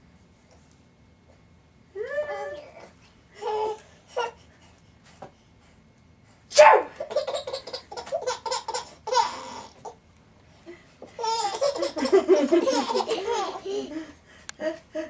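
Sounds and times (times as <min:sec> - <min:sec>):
woman pretend sneezing: 0:06.5 - 0:06.9
baby laughing: 0:07.0 - 0:10.0, 0:11.2 - 0:14.0.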